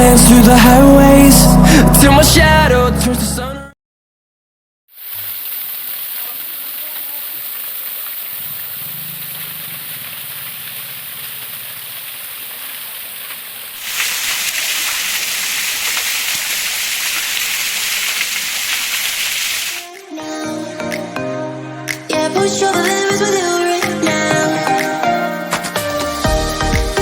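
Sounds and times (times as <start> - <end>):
small waterfall rushing: 5.0 - 20.0.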